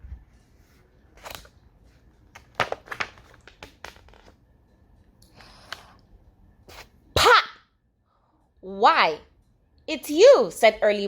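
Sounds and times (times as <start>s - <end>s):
paper pages rustling: 0.4s - 4.4s.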